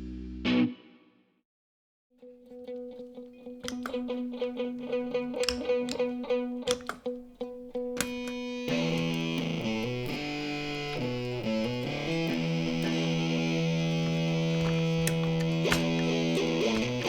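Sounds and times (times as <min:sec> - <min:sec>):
electric guitar picking single note: 0:07.7 - 0:17.0.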